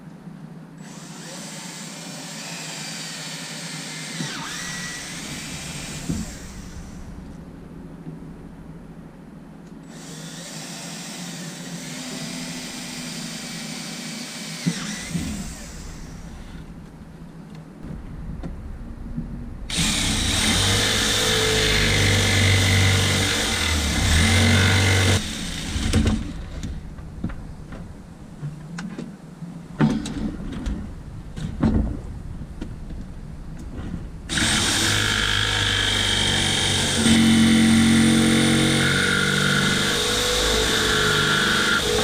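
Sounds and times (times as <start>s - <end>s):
power tool running: 0.8s - 7.2s, 9.9s - 16.7s, 19.7s - 26.6s, 34.3s - 42.0s.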